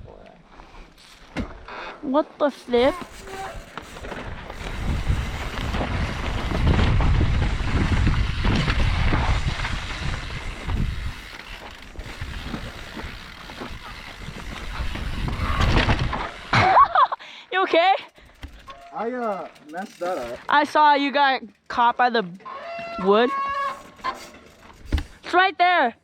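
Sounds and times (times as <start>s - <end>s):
bike tyres rattling on rocks: 2.4s - 17.0s, 18.1s - 25.2s
wind buffeting microphone: 2.9s - 11.3s, 12.0s - 16.4s.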